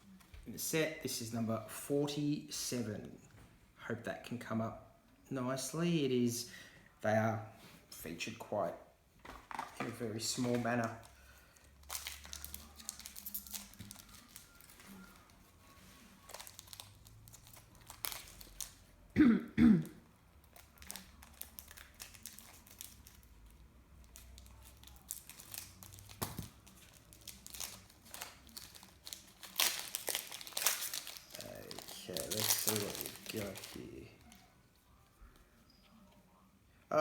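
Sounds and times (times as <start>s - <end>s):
cards rustling: 9.2s - 18.8s, 20.4s - 35.8s
card wrappers crinkling: 9.3s - 18.9s, 20.3s - 36.0s
person coughing: 19.2s - 20.0s.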